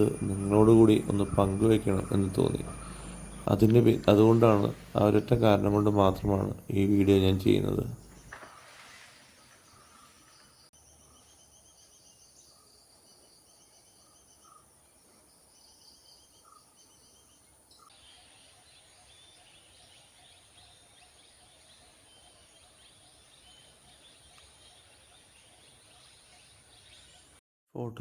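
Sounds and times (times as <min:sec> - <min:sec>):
rapid repeated chirps: 0:00.0 - 0:06.5
dense even chirring: 0:00.0 - 0:08.3
steady high whine: 0:00.0 - 0:08.3.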